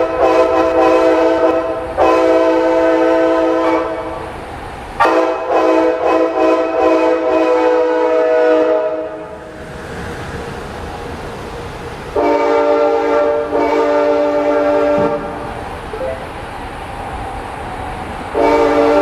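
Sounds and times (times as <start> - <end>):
train air horn blasts: 0.0 - 4.3, 5.0 - 9.3, 12.2 - 15.5, 18.3 - 19.0
train rumble: 0.0 - 19.0.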